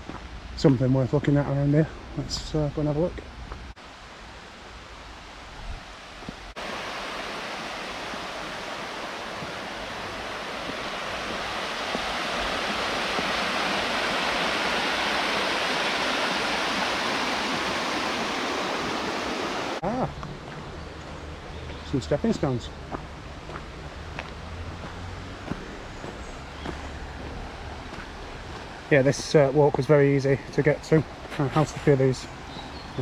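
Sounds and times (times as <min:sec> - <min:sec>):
rushing river water: 0:03.7 - 0:20.0, 0:22.3 - 0:33.0.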